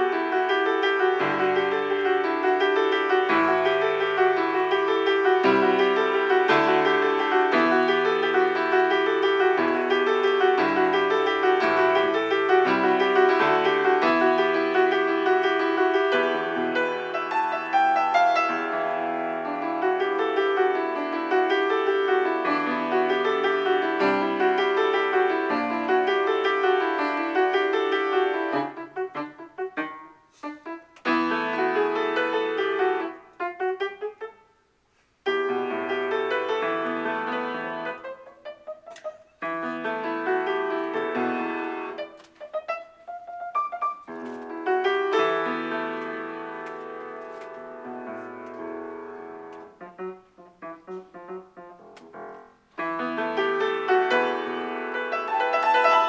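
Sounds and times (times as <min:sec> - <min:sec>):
improvised piano: 0:00.0 - 0:56.0.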